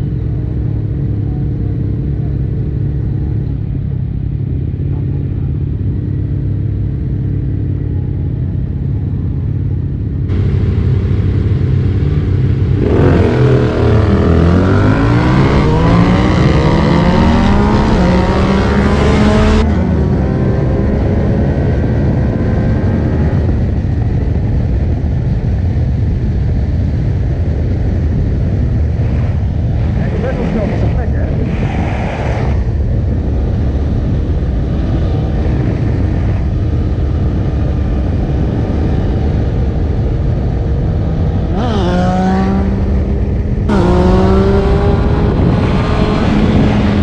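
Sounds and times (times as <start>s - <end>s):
motorcycle engine revving: 10.2s - 24.2s, 28.1s - 47.0s.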